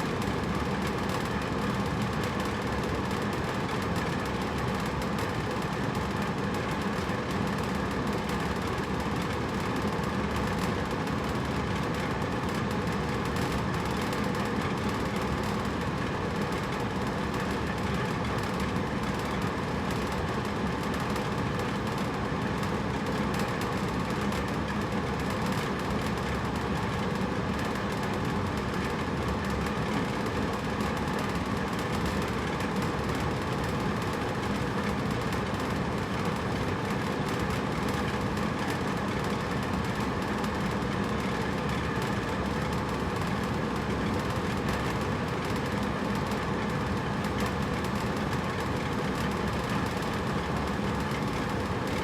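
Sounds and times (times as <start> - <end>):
air conditioner running: 0.0 - 52.0.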